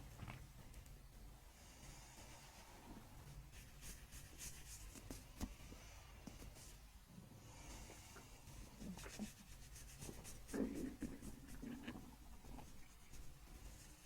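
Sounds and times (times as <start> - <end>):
hands rubbing on skin and clothing: 3.2 - 6.8, 8.4 - 14.0.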